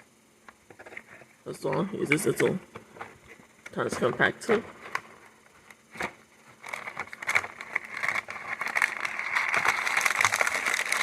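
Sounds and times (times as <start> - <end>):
plastic packaging crinkling: 6.5 - 11.0.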